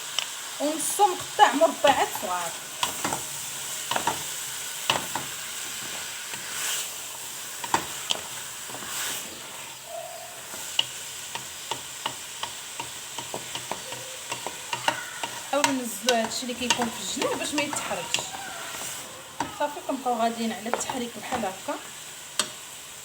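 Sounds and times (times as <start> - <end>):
food sizzling in oil: 0.0 - 23.0
spoon scraping a pan: 1.7 - 22.6.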